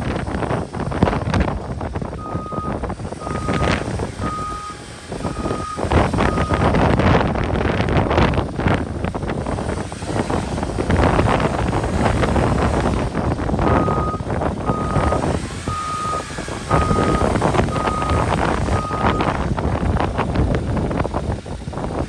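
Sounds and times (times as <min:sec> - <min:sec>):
backhoe loader engine running: 0:00.0 - 0:22.0
reversing alarm beeps: 0:02.2 - 0:06.8, 0:13.7 - 0:19.3.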